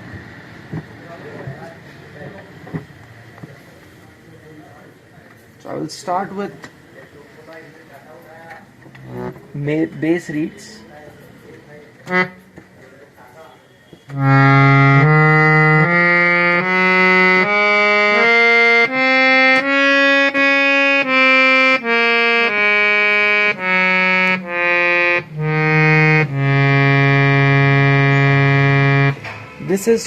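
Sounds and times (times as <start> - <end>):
harmonium playing bass notes: 9.0 - 10.8, 12.0 - 12.6, 14.1 - 30.0.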